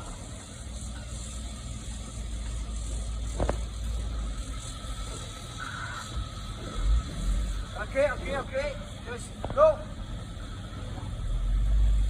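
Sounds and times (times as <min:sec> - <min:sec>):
faint steady whine: 0:00.0 - 0:12.0.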